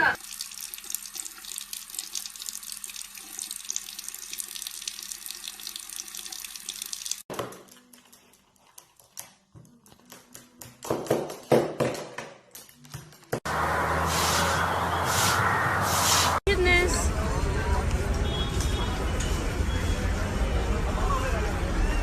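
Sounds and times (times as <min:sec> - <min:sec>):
running water from a tap: 0:00.0 - 0:07.3.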